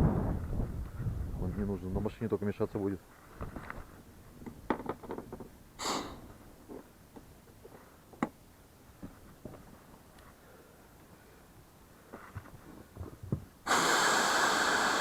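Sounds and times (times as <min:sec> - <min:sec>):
short air hiss: 0:05.8 - 0:06.3, 0:13.6 - 0:15.0.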